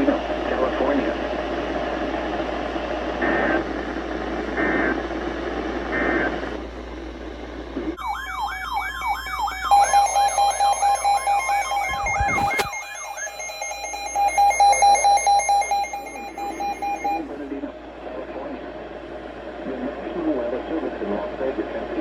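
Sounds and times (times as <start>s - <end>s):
radio hiss: 3.2s - 5.2s, 5.8s - 6.6s, 11.6s - 13.3s
warbling electronic alert tone: 8.0s - 17.4s
steady electronic tone: 9.0s - 17.5s
data-burst chirps: 9.7s - 17.4s.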